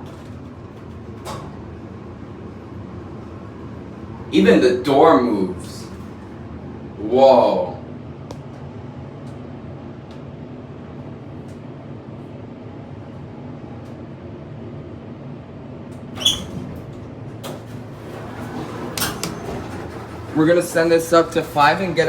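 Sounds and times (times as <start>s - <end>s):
elevator cab clacking and rattling: 0.0s - 4.1s, 16.1s - 22.0s
elevator machinery humming: 0.0s - 22.0s.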